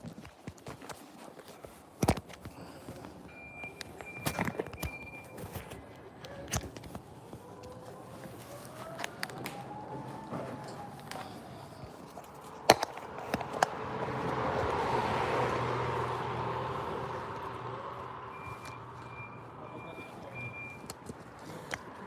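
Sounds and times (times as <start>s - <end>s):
short high beeps: 3.3s - 5.4s, 18.3s - 20.8s
vehicle passing: 7.0s - 22.0s.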